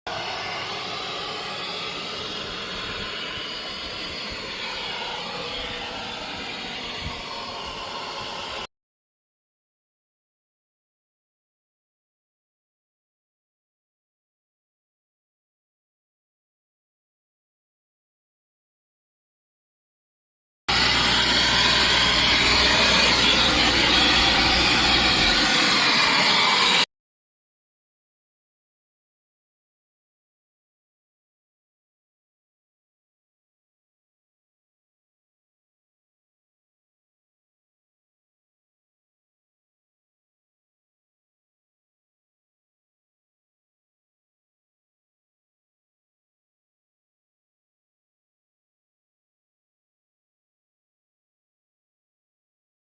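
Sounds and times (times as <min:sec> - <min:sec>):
hissing rush of air: 0:00.1 - 0:08.7, 0:20.7 - 0:26.8
low hum: 0:20.7 - 0:26.8
rushing air hiss: 0:20.7 - 0:26.8.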